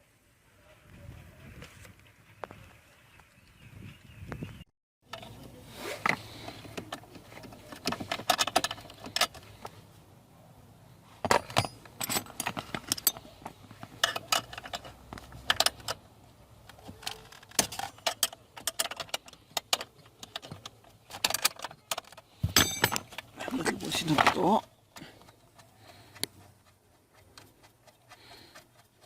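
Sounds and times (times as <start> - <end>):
metal hand tools clinking: 11.3 - 16.0, 17.0 - 24.6.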